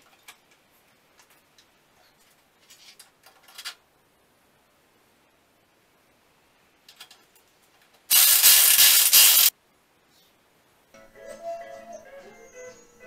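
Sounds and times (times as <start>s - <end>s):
short rasping bursts: 8.1s - 9.5s
tool clicks: 8.1s - 9.5s.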